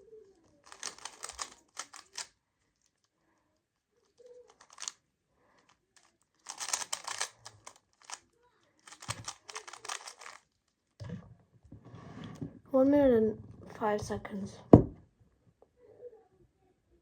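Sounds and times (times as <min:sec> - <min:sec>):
plastic puzzle cube clicking: 0:00.4 - 0:02.3, 0:04.1 - 0:05.0, 0:05.6 - 0:08.2, 0:08.8 - 0:10.5.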